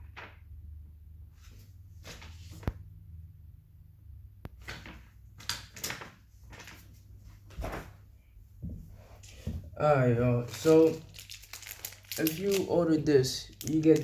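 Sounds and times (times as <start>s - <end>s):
packaging rustling: 10.3s - 14.0s.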